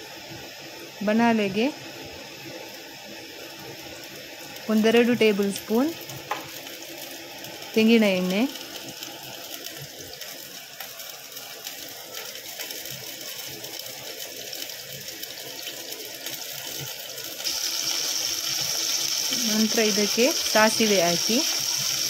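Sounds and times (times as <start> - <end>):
oil sizzling in a frying pan: 0.0 - 22.0.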